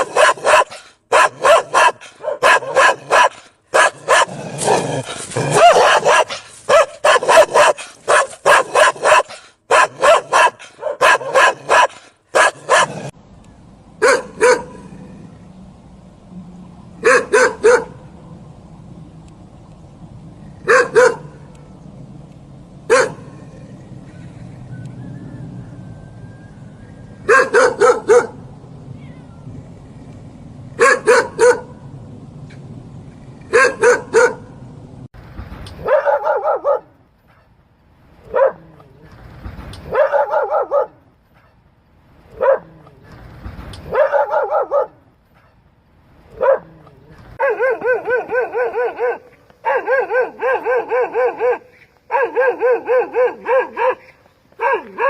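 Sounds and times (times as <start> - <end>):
dog barking: 0.0 - 4.4, 5.5 - 13.1, 14.0 - 14.8, 17.0 - 18.0, 20.7 - 21.4, 22.9 - 23.3, 27.3 - 28.4, 30.8 - 31.8, 33.5 - 34.5, 35.8 - 36.9, 38.3 - 38.8, 39.9 - 41.0, 42.3 - 42.8, 43.9 - 45.0, 46.3 - 46.8, 47.4 - 55.0.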